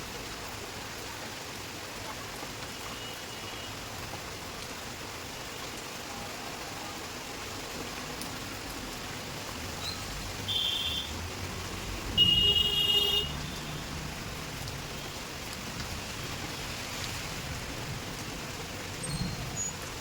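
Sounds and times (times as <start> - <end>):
rain hissing: 0.0 - 20.0.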